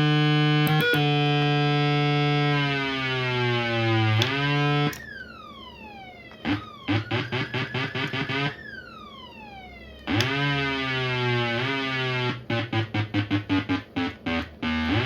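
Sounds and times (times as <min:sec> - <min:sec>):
siren sweeping tones: 0:00.0 - 0:15.0
low horn-like tone: 0:09.5 - 0:15.0.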